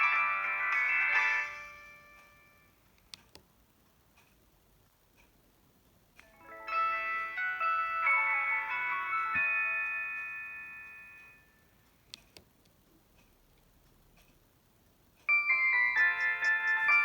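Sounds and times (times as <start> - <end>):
mobile phone polyphonic melody: 0.0 - 2.7, 6.2 - 11.8, 15.3 - 17.0.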